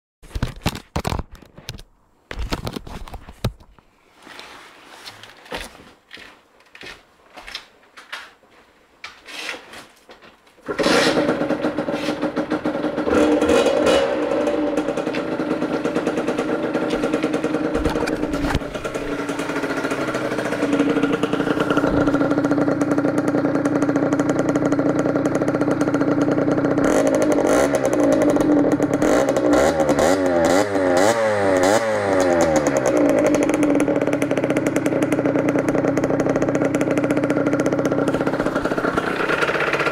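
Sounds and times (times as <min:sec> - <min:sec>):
two-stroke motorcycle engine revving: 0:10.7 - 0:39.9.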